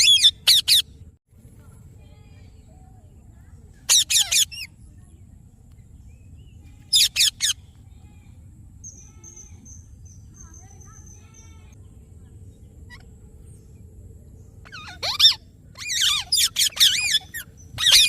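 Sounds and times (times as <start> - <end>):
parakeet calling: 0.0 - 0.8, 3.9 - 4.7, 6.9 - 7.6, 14.6 - 18.0.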